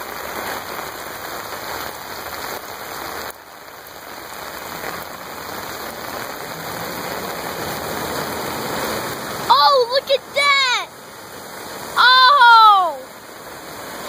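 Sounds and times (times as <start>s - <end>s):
heavy rain falling: 0.0s - 14.0s.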